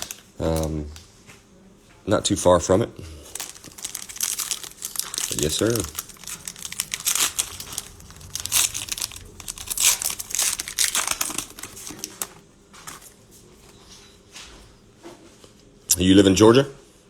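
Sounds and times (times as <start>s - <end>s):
cellophane wrapper crinkling: 0.0s - 1.1s, 3.1s - 13.8s.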